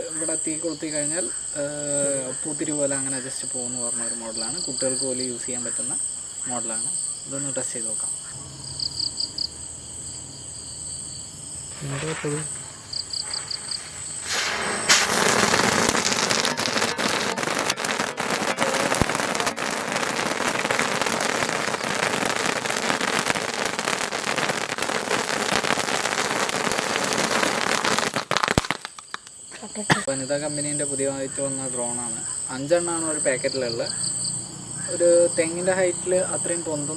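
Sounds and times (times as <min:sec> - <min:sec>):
crickets chirping: 0:00.0 - 0:36.9
firework fountain hissing and crackling: 0:11.5 - 0:33.8, 0:34.9 - 0:36.9.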